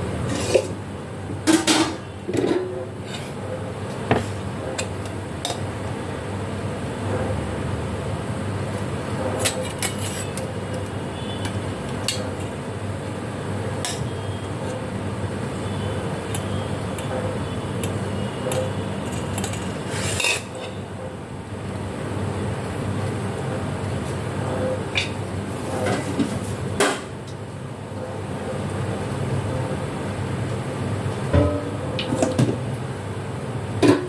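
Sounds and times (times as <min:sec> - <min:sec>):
utensils clinking against pots: 0:01.4 - 0:03.4, 0:09.2 - 0:12.6, 0:13.8 - 0:14.2, 0:16.3 - 0:20.8, 0:33.8 - 0:34.0
steady low hum: 0:20.8 - 0:34.0.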